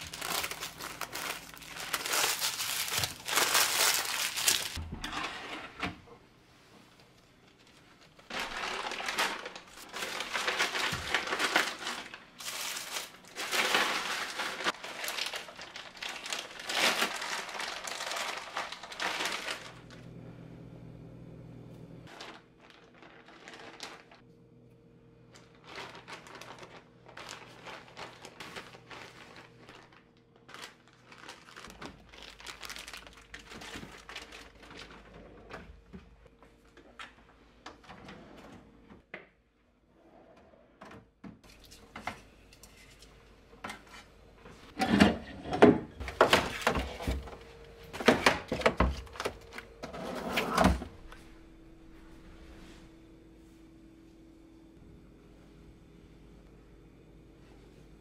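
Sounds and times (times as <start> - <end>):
packaging crinkling: 0.0 - 4.8, 7.6 - 20.0, 22.1 - 24.2, 25.3 - 35.4, 46.0 - 49.8
low steady hum: 0.0 - 39.8, 40.8 - 58.0.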